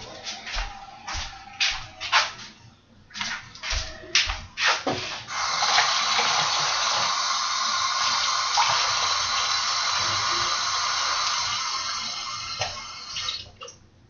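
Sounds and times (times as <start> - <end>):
water splashing into sink: 5.3 - 13.8.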